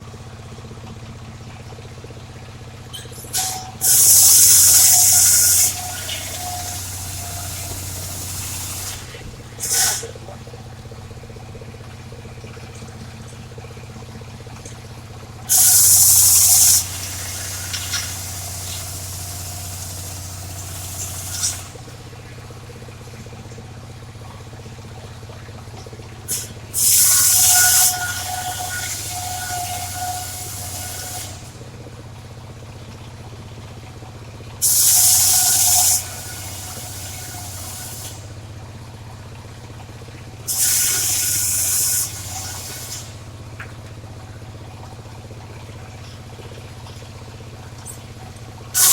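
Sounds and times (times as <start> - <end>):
circular saw ripping wood: 3.3 - 10.2, 15.5 - 21.8, 26.3 - 31.6, 40.5 - 43.2.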